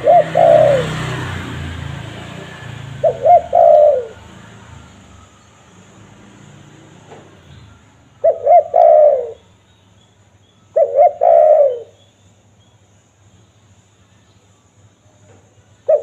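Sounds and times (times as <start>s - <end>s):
dove cooing: 0.0s - 1.4s, 2.0s - 4.4s, 8.2s - 9.4s, 10.8s - 12.0s.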